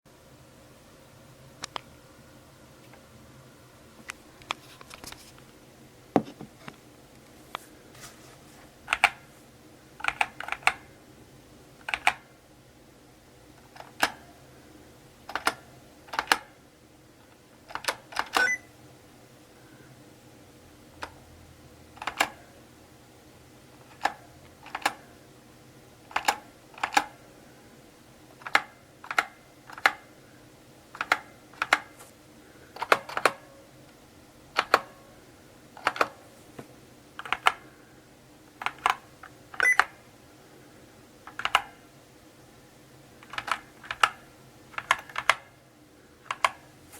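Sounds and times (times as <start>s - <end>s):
mechanical keyboard typing: 8.9s - 9.2s, 10.0s - 10.9s, 11.8s - 12.3s, 13.7s - 14.2s, 15.2s - 16.6s, 17.7s - 18.6s, 22.0s - 22.4s, 23.8s - 25.1s, 26.1s - 27.2s, 28.4s - 30.1s, 30.9s - 32.0s, 32.8s - 33.4s, 34.5s - 34.9s, 35.8s - 36.2s, 37.2s - 37.6s, 38.6s - 40.0s, 41.3s - 41.8s, 43.2s - 45.5s, 46.3s - 46.6s.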